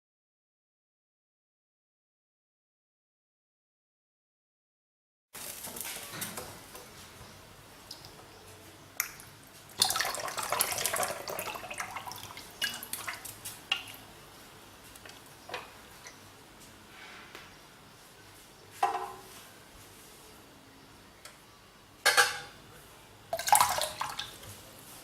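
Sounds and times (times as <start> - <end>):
water splashing and dripping: 9.0 - 14.0.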